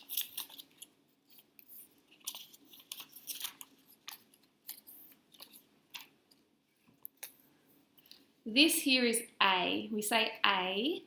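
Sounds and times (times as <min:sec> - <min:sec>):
paper rustling and scraping: 0:00.0 - 0:06.1.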